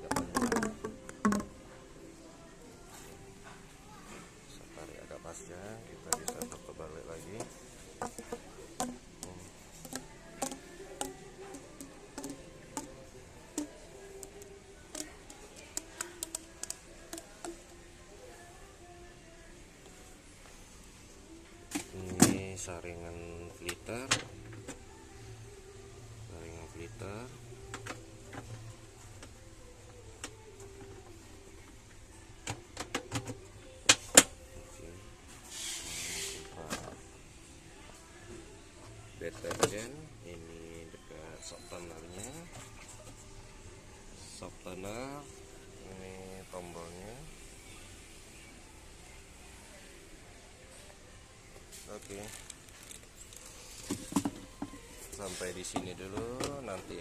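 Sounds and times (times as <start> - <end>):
faint background music: 0.0 - 57.0
plastic parts clicking: 6.0 - 6.7, 8.0 - 17.6.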